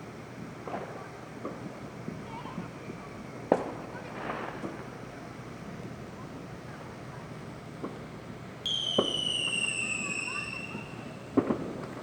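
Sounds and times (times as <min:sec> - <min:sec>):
firework pops: 0:00.4 - 0:05.1, 0:07.8 - 0:08.1, 0:08.7 - 0:12.0
whistling firework: 0:08.7 - 0:12.0.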